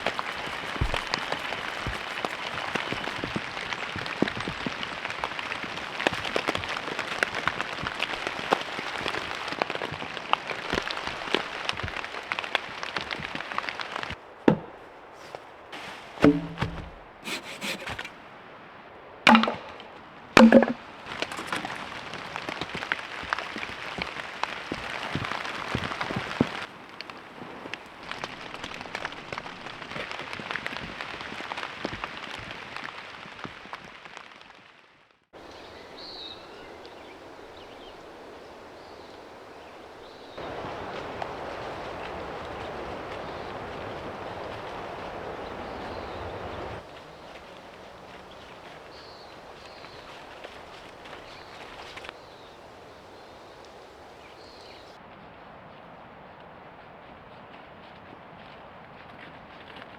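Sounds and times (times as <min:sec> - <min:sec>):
rain pattering: 0:00.0 - 0:14.4, 0:19.3 - 0:56.5
loud sharp knocks: 0:16.2 - 0:18.1, 0:19.3 - 0:20.8.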